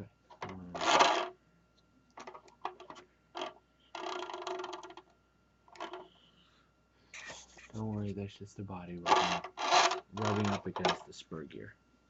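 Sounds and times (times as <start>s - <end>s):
plastic scraping on spinning gear: 0.7s - 1.3s, 2.2s - 5.0s, 5.7s - 6.2s, 9.0s - 11.0s.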